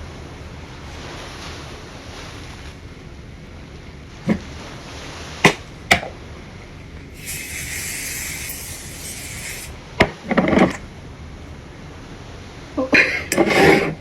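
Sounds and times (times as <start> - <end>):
aerosol spray can hissing: 7.2 - 9.7.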